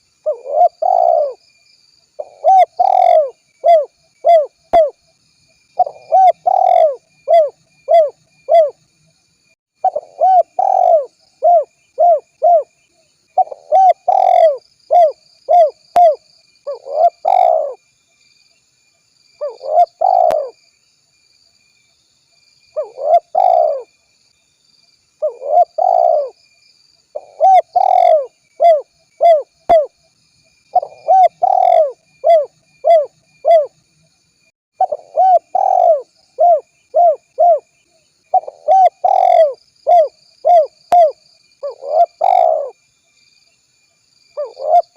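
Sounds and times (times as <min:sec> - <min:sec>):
dove cooing: 0:00.2 - 0:01.4, 0:02.2 - 0:05.0, 0:05.8 - 0:08.8, 0:09.8 - 0:12.8, 0:13.4 - 0:17.8, 0:19.4 - 0:20.6, 0:22.8 - 0:23.9, 0:25.2 - 0:26.4, 0:27.1 - 0:29.9, 0:30.7 - 0:33.7, 0:34.8 - 0:37.7, 0:38.3 - 0:42.8, 0:44.4 - 0:44.9.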